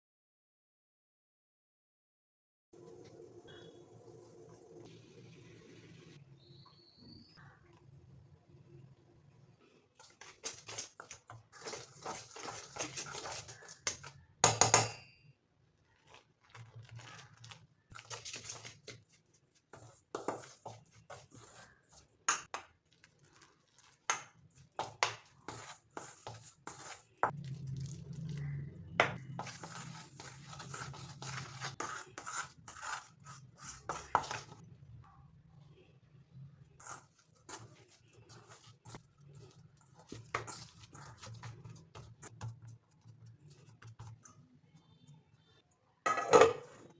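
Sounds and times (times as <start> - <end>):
kitchen utensils clinking: 46.1 - 46.9.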